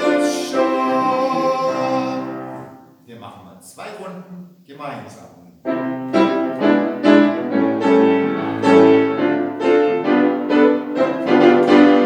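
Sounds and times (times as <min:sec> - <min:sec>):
piano playing simple tune: 0:00.0 - 0:02.9, 0:05.6 - 0:12.0.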